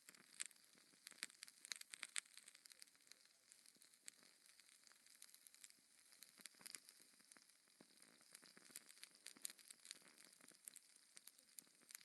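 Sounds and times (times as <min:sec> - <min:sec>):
fire crackling and popping: 0:00.0 - 0:12.0.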